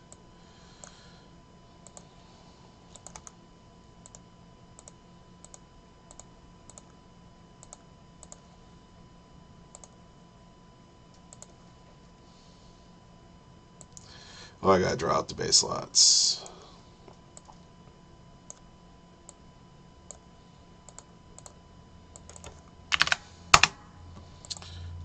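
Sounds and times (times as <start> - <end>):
faint steady hum: 0.0 - 25.0
keyboard and mouse clicks: 2.9 - 3.4, 11.2 - 11.6, 22.2 - 23.7.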